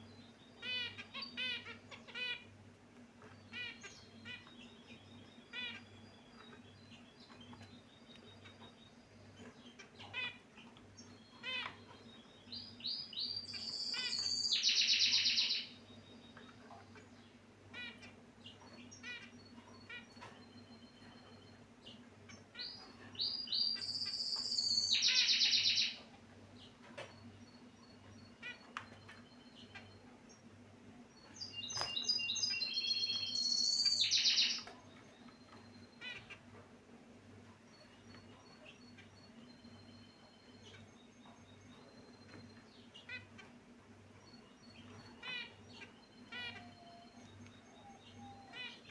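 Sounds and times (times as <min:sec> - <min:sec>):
finches chirping: 0:00.0 - 0:48.9
rapid bird trill: 0:31.4 - 0:36.5.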